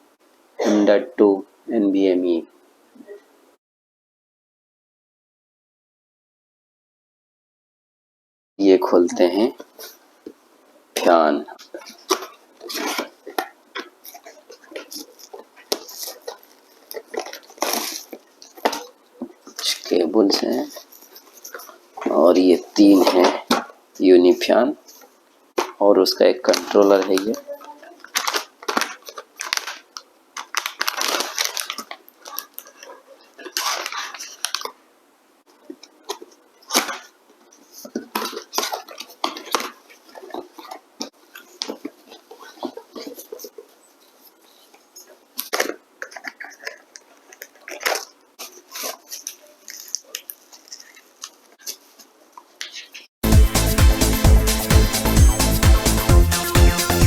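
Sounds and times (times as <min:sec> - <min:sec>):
box and wrapping rustling: 0:11.0 - 0:34.8, 0:35.5 - 0:53.7.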